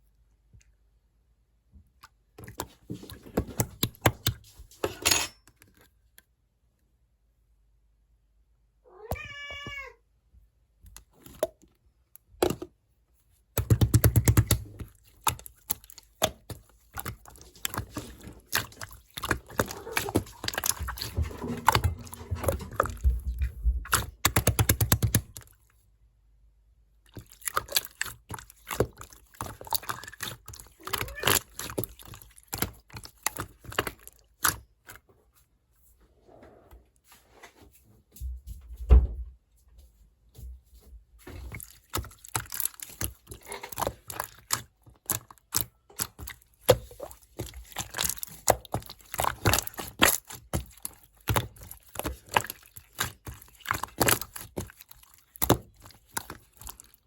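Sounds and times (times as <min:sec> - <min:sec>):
slime squished by hand: 0:13.6 - 0:25.6, 0:27.1 - 0:35.1, 0:41.3 - 0:57.0.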